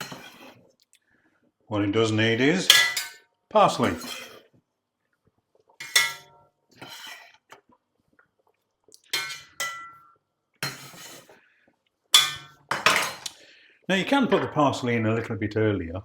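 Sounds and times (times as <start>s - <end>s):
utensils knocking against a pot: 2.7s - 3.2s, 3.8s - 4.4s, 5.8s - 7.1s, 9.2s - 11.2s, 12.2s - 13.3s.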